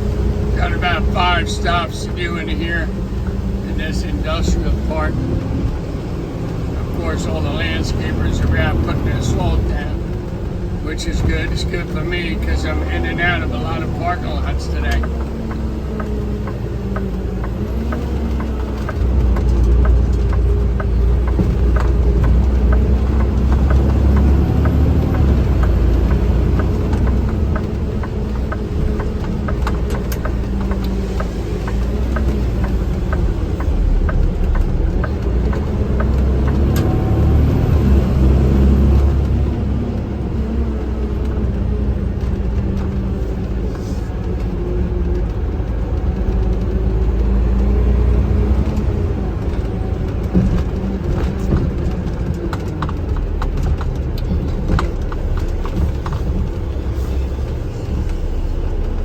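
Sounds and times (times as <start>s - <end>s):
vehicle engine and road noise: 0.0s - 59.0s.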